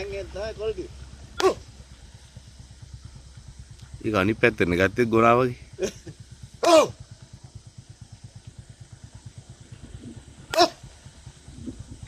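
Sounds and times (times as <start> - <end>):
small engine idling: 0.0 - 12.0
sharp cries of falling pitch: 6.6 - 7.0.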